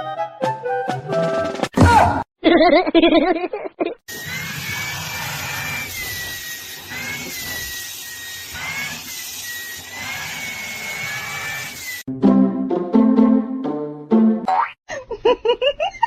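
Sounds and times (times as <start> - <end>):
small motor whining: 4.1 - 12.0.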